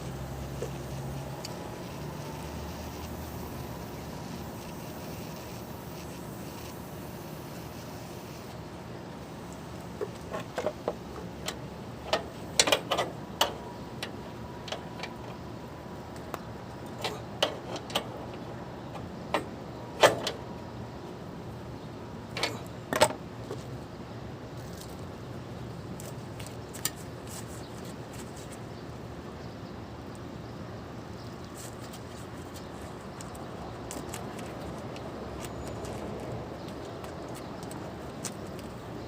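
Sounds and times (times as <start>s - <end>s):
low background noise: 0.0s - 39.0s.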